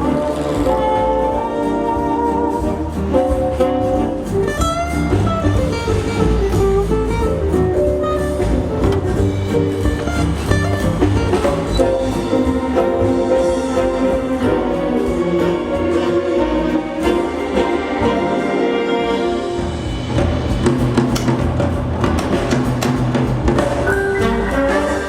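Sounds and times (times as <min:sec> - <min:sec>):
orchestral show music: 0:00.0 - 0:25.0.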